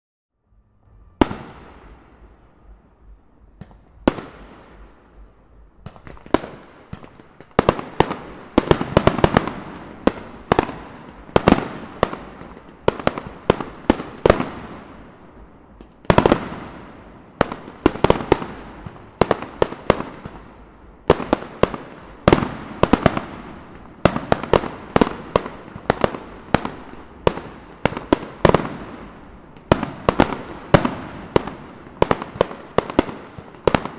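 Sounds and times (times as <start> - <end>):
fireworks bursting with bangs: 1.0 - 33.9
fireworks crackling: 3.5 - 33.9.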